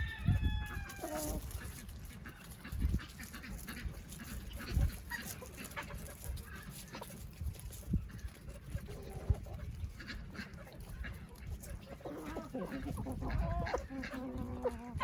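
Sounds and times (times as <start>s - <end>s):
rooster crowing: 0.0s - 1.2s
chickens scratching: 0.0s - 15.0s.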